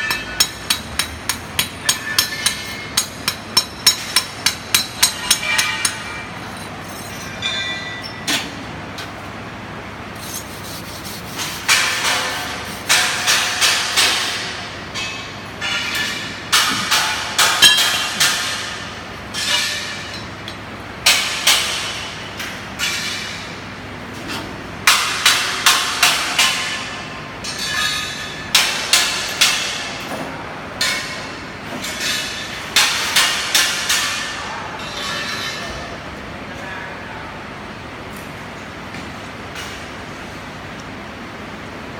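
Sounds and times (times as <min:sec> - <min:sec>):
hammer striking steel: 0:00.0 - 0:08.6, 0:11.6 - 0:20.3, 0:24.8 - 0:30.0, 0:31.9 - 0:34.4.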